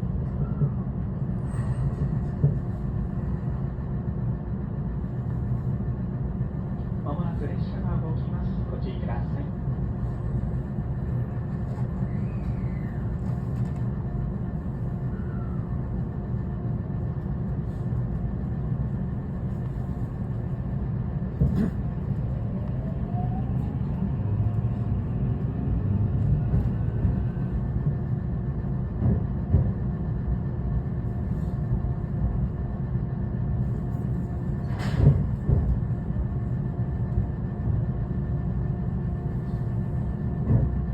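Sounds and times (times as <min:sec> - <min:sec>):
electric train rumble: 0:00.0 - 0:40.9.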